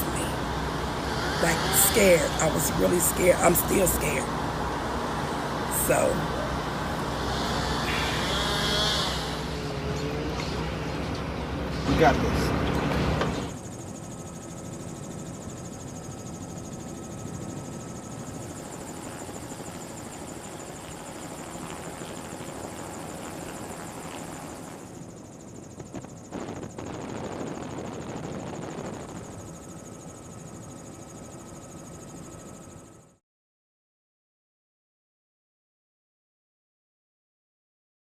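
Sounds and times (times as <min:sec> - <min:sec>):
mechanical drone with high whine: 0:00.0 - 0:33.2.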